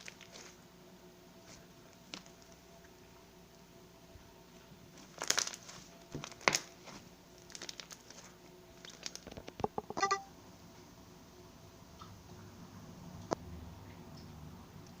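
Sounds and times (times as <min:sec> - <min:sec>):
slime crackling and squishing: 0:00.0 - 0:00.6, 0:05.0 - 0:09.4
slime squeak: 0:09.6 - 0:10.3.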